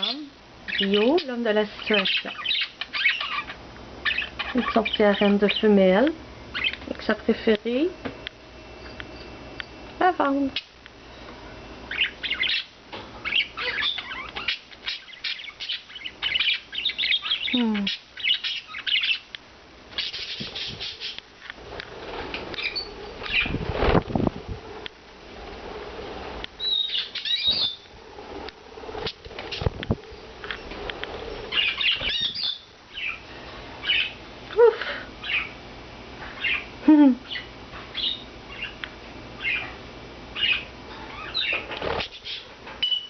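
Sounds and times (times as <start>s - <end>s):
budgerigars chirping: 0.0s - 5.8s, 6.5s - 6.8s, 11.9s - 19.3s, 20.0s - 21.2s, 26.6s - 27.8s, 31.5s - 33.2s, 33.8s - 34.2s, 35.2s - 35.6s, 36.4s - 38.8s, 39.4s - 39.8s, 40.4s - 43.0s
wing flaps: 20.0s - 26.4s, 27.4s - 32.4s, 41.6s - 42.2s.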